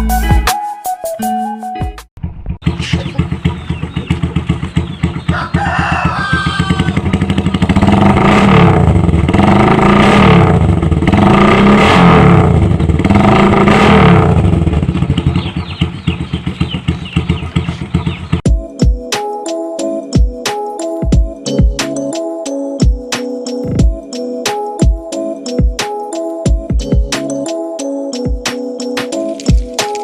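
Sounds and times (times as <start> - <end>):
motorcycle engine idling and revving: 2.2 - 18.6, 21.0 - 22.2, 22.8 - 24.2, 24.8 - 27.6
rooster crowing: 5.2 - 7.2.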